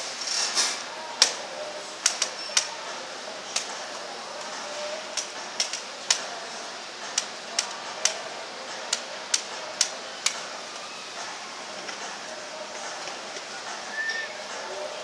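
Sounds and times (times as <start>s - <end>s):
steady background hum: 0.0s - 15.0s
sharp clicks: 5.2s - 6.3s.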